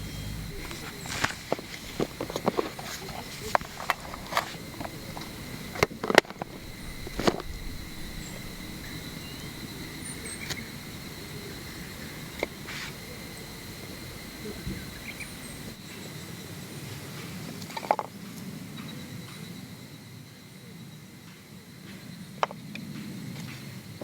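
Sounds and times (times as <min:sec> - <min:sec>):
insect trilling: 0:00.0 - 0:16.2.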